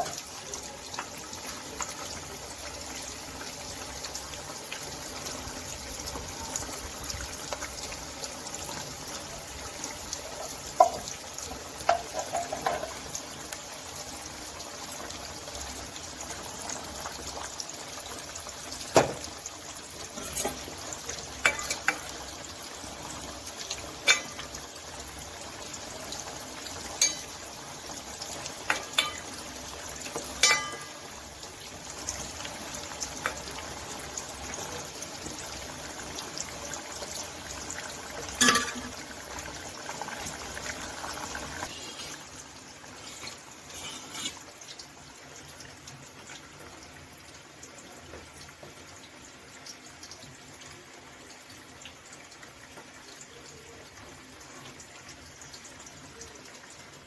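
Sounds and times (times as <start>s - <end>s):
food sizzling in a pan: 0.0s - 57.0s
utensil clinking against pan: 11.9s - 13.0s, 21.4s - 22.0s, 27.0s - 27.4s, 28.7s - 29.3s, 30.4s - 31.1s, 38.4s - 39.0s.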